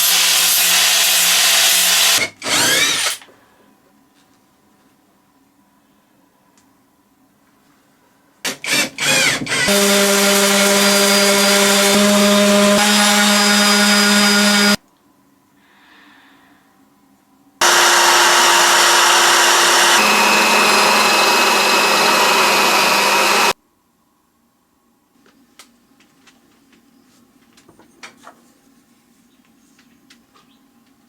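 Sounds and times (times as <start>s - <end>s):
power tool running on wood: 0.0s - 3.2s, 8.7s - 14.8s, 17.6s - 23.6s.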